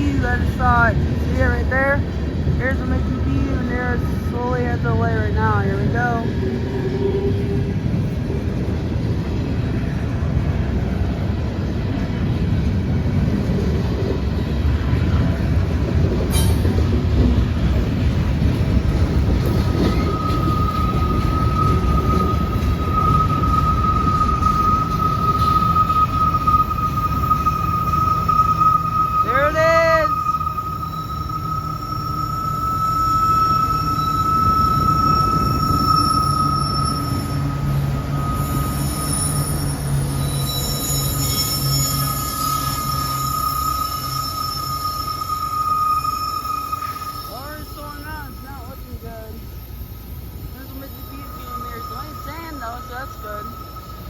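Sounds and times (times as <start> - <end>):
freight train rumble: 0.0 - 54.0
high-pitched wheel squeal: 19.4 - 54.0.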